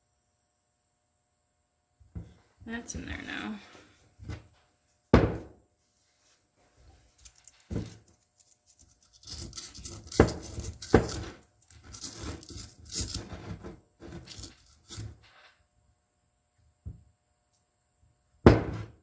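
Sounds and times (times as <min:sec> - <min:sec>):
rustling and scraping: 0:05.8 - 0:15.6
small metal parts knocking: 0:07.2 - 0:13.3.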